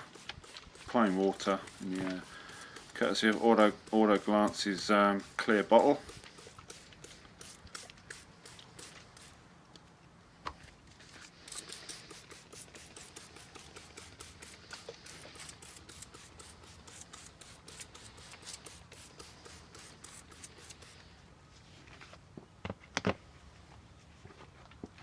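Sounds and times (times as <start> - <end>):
spray bottle hissing spurts: 0.0 - 9.4, 11.1 - 21.1.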